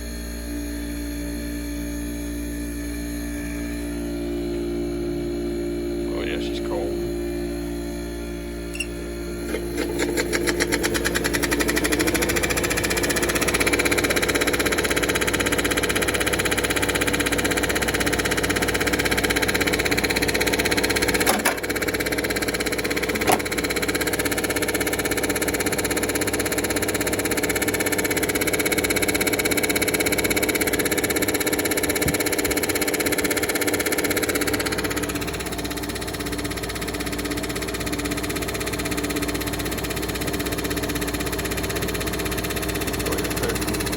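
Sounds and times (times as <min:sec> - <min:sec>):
air conditioner humming: 0:03.2 - 0:13.6, 0:19.6 - 0:24.2.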